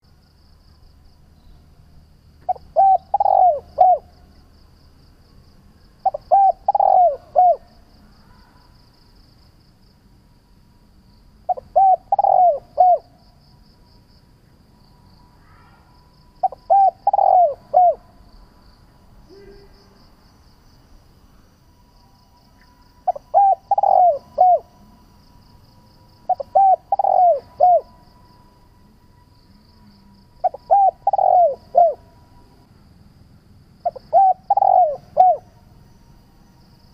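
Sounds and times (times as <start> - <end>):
dove cooing: 2.5 - 4.1, 6.0 - 7.7, 11.5 - 13.1, 16.4 - 18.1, 23.0 - 24.8, 26.3 - 28.0, 30.4 - 32.1, 33.8 - 35.5.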